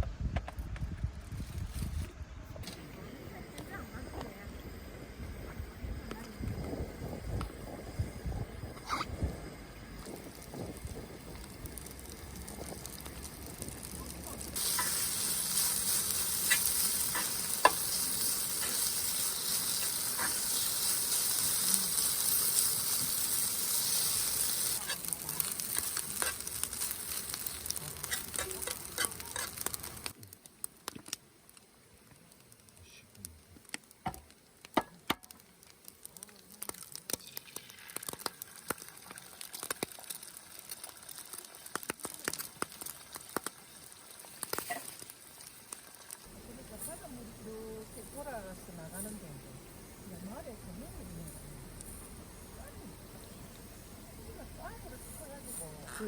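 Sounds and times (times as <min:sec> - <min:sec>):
food sizzling on a griddle: 0:05.5 - 0:31.2, 0:32.0 - 0:56.0
scattered pops and clicks: 0:10.0 - 0:14.9, 0:24.8 - 0:46.3.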